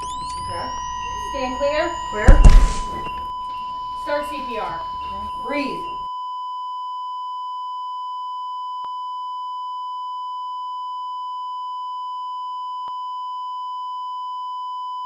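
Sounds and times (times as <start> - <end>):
flatline alarm high beep: 0.0 - 6.0.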